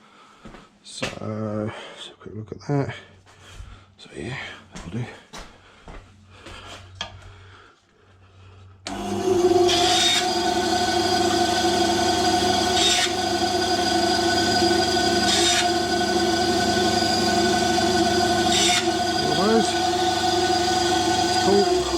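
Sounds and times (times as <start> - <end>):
electric saw cutting wood: 8.9 - 21.9.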